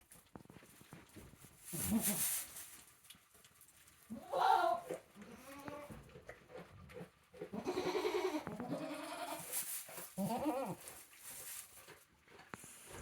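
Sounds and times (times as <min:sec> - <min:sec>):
goats bleating: 0:04.1 - 0:05.9, 0:07.5 - 0:09.5, 0:10.2 - 0:10.8.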